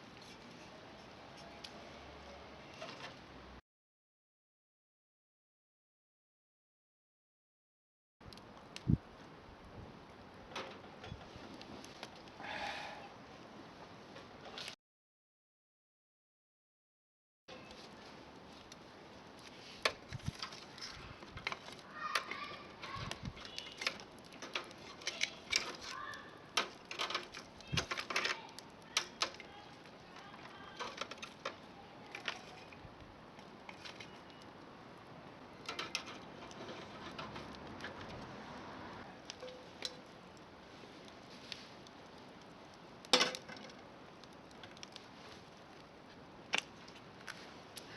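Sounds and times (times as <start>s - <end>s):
objects being handled clattering: 19.4s - 32.8s, 35.6s - 38.2s, 39.2s - 40.1s.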